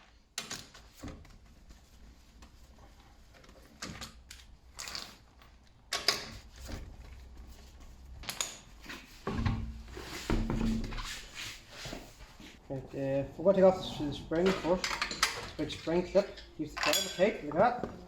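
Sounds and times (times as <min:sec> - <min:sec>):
metal tools clicking and clanking: 0:13.8 - 0:17.9.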